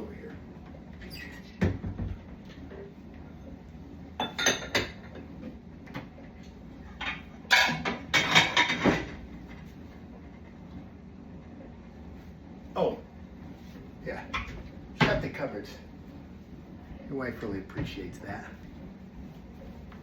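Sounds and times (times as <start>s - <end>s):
dishes clattering and clinking: 4.2s - 5.4s, 6.9s - 9.2s.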